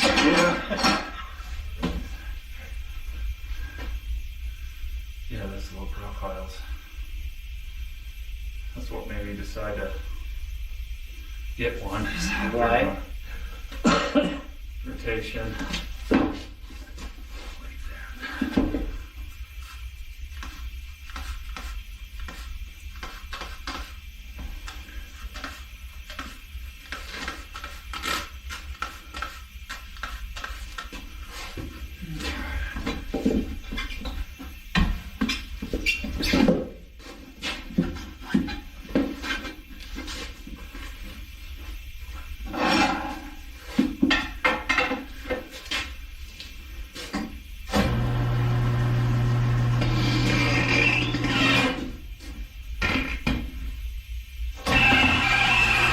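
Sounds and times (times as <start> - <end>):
steady low hum: 0.0 - 34.5.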